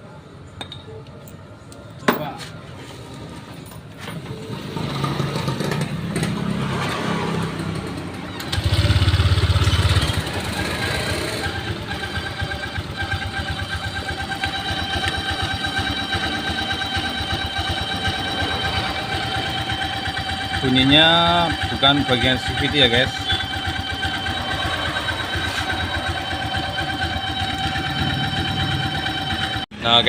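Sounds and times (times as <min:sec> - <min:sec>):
scooter engine running: 0:04.2 - 0:29.7
thin whine: 0:11.4 - 0:29.6.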